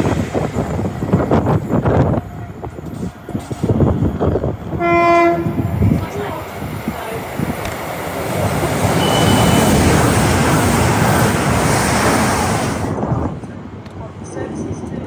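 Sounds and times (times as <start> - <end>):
passing train rumbling: 0.0 - 15.0
train horn: 4.8 - 5.6, 9.0 - 9.9.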